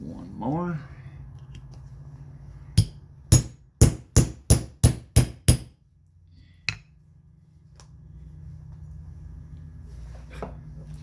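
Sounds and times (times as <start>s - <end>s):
hammer striking steel punch: 2.8s - 5.8s.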